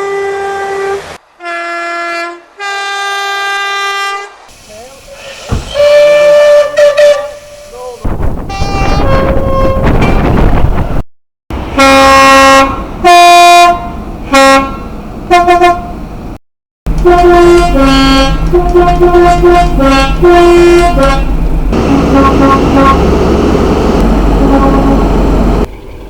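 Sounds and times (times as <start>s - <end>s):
train two-tone horn blasts: 0.0s - 4.4s, 5.7s - 7.7s, 8.5s - 10.2s, 11.7s - 16.0s, 16.9s - 25.5s
passing train rushing: 0.0s - 26.0s
low engine rumble: 13.8s - 26.0s.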